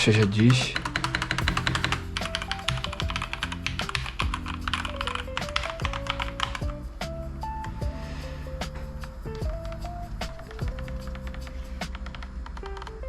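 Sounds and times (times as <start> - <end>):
background music: 0.0 - 13.0
mechanical keyboard typing: 2.7 - 6.6, 10.8 - 13.0.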